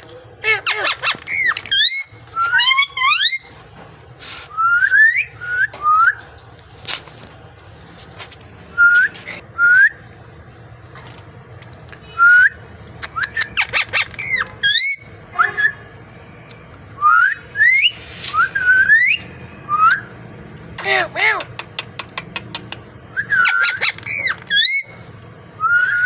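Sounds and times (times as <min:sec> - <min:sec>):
parrot whistling: 0:23.2 - 0:24.9.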